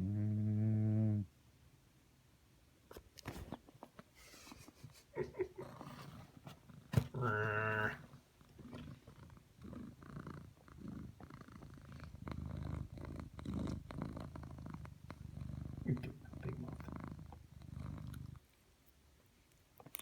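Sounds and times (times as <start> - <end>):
pet snoring: 8.6 - 18.4.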